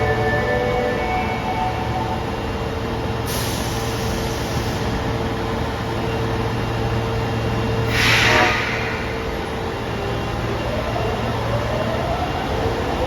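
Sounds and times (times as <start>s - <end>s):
train equipment humming: 0.0s - 10.7s
air hiss: 3.3s - 4.8s, 7.9s - 9.2s.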